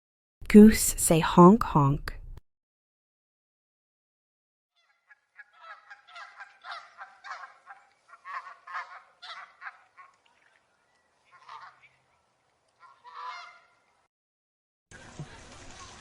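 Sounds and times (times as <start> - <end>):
goose honking: 4.8 - 10.6, 11.2 - 13.9.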